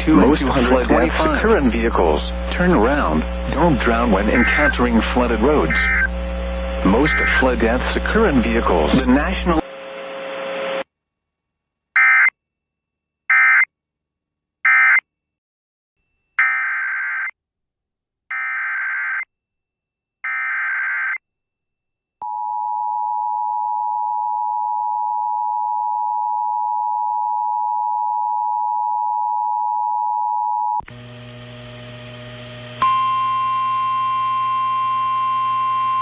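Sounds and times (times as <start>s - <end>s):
buzzy mix of tones: 0.0s - 10.8s
warbling data bursts: 2.6s - 7.6s
steady alert tone: 16.4s - 16.8s.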